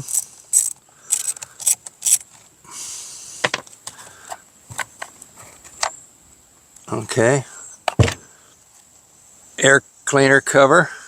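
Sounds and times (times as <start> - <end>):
scraping rustle: 3.5 - 5.9.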